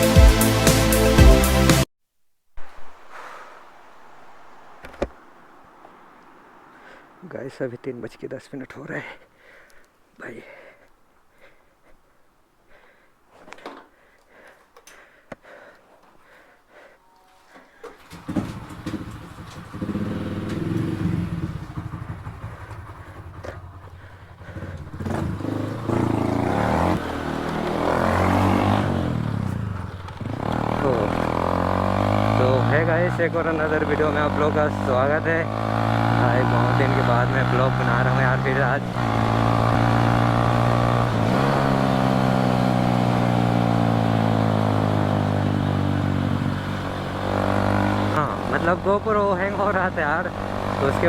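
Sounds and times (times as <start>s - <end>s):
motorcycle engine running: 18.0s - 51.0s.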